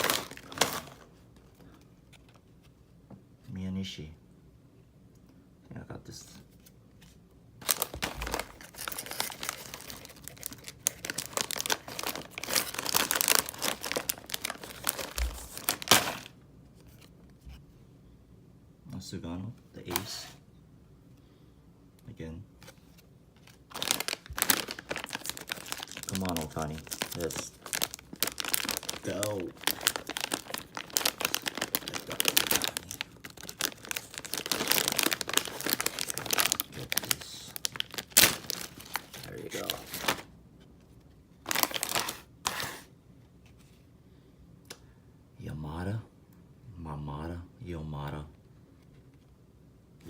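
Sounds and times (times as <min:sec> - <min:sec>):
plastic packaging crackling: 0:00.0 - 0:01.1, 0:07.6 - 0:17.1, 0:22.6 - 0:40.3, 0:41.4 - 0:42.6
plastic wrapper crinkling: 0:00.0 - 0:01.1, 0:07.6 - 0:17.1, 0:22.6 - 0:40.3, 0:41.4 - 0:42.3.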